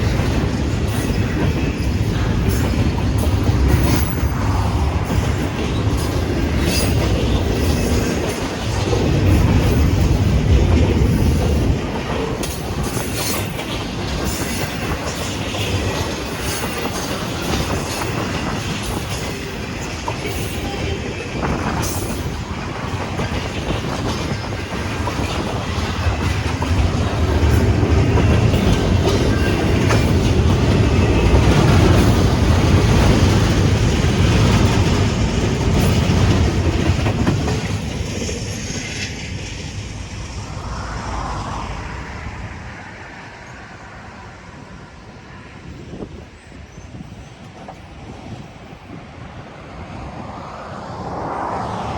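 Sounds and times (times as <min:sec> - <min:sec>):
wheels clacking over rail joints: 0:00.0 - 0:40.8
freight train rumbling past: 0:00.0 - 0:51.9.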